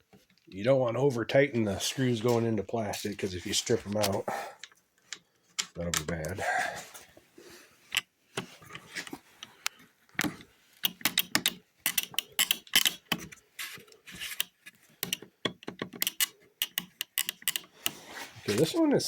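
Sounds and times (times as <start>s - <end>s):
plastic parts handled: 2.2s - 7.1s, 7.8s - 19.0s
screw driven into plastic: 10.2s - 18.3s.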